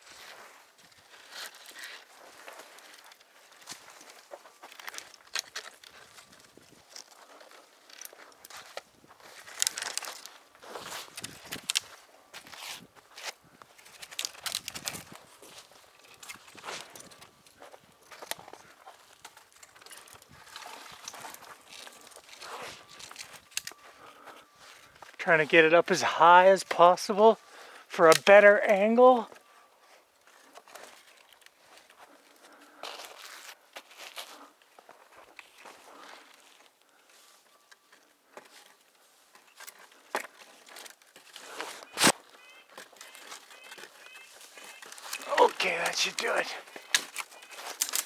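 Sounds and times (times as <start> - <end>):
rustling dry brush and twigs: 0.0 - 25.2, 26.4 - 48.0.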